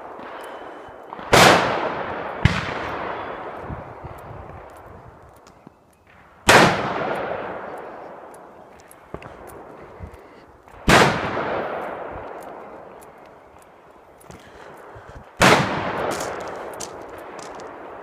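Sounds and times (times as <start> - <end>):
loud gunshots with echo: 0.0 - 3.6, 6.4 - 8.3, 10.8 - 12.9, 15.4 - 18.0
distant gunshot: 1.2 - 3.6, 10.8 - 12.2, 15.4 - 16.6.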